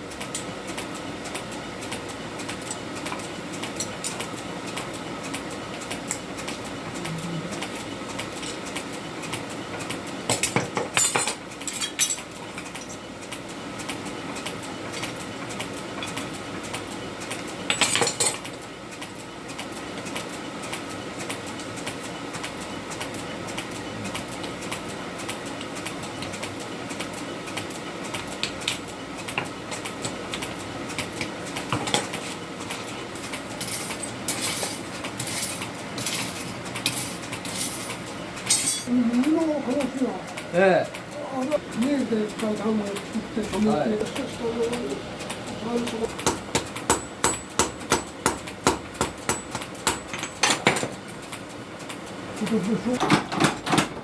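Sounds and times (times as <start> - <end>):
hammer clinking on steel: 38.5 - 38.9, 46.2 - 50.6.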